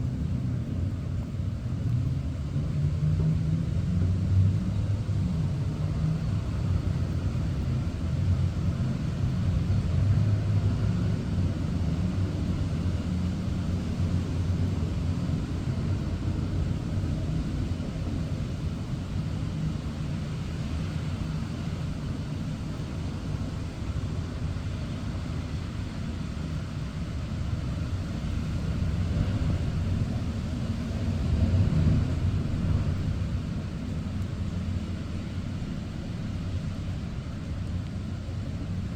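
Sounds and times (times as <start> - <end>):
rumble of passing cars: 0.0 - 38.9.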